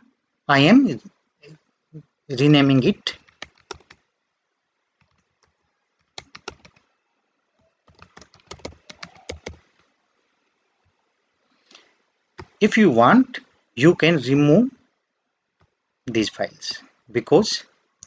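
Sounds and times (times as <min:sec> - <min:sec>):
typing on computer keyboard: 0:03.2 - 0:04.0, 0:05.0 - 0:06.9, 0:07.8 - 0:09.8.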